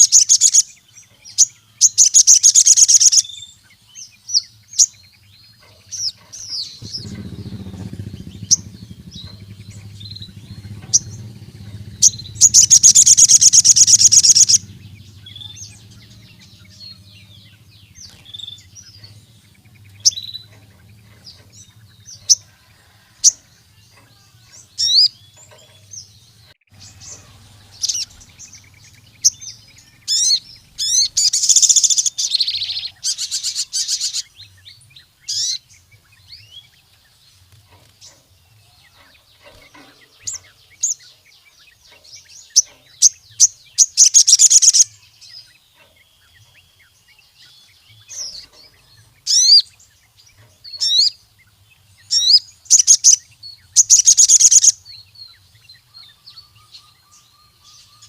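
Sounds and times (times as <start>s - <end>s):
bird buzzing trills: 0.0s - 3.4s, 5.6s - 45.1s, 48.0s - 54.9s
bird chirping: 0.0s - 58.0s.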